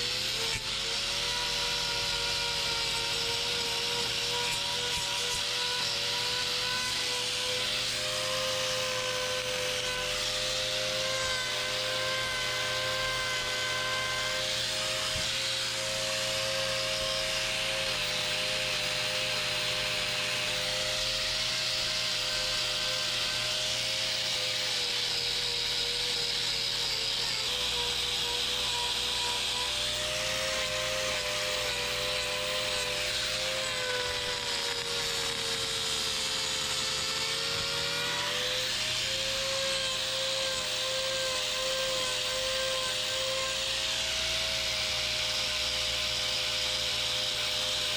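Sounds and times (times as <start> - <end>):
power tool whining: 0.0 - 47.9.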